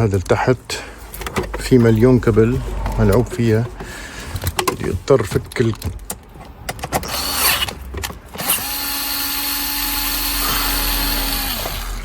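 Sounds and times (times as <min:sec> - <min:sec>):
cordless drill motor running: 0:07.1 - 0:07.7, 0:08.4 - 0:12.0.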